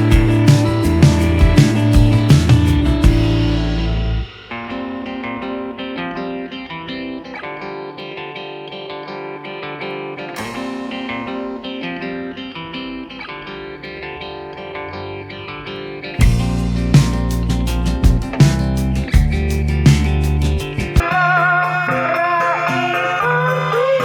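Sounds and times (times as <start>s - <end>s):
heavy bass and drums: 0.0s - 4.6s, 16.2s - 21.0s.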